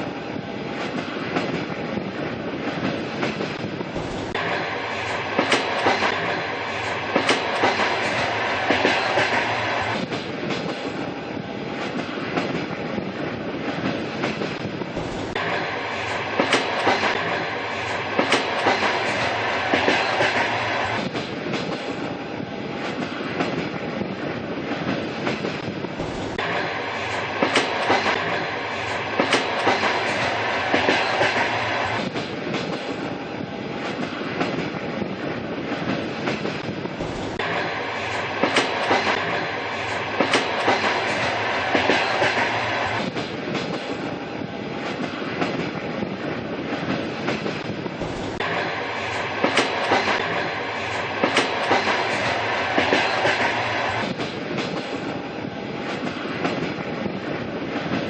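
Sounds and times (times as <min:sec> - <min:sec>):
train rumbling on rails: 0:00.0 - 0:58.0
wheels clickety-clack on rail joints: 0:00.0 - 0:58.0.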